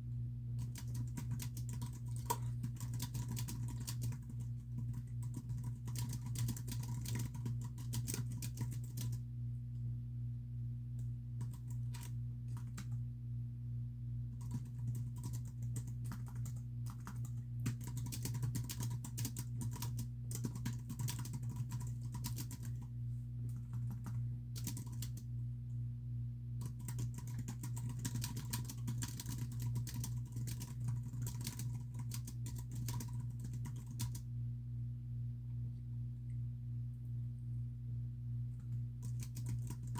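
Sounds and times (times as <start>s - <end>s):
steady low hum: 0.0s - 39.9s
typing on computer keyboard: 0.6s - 9.2s, 11.4s - 13.0s, 14.4s - 22.9s, 23.5s - 25.3s, 26.6s - 34.2s, 38.6s - 39.9s.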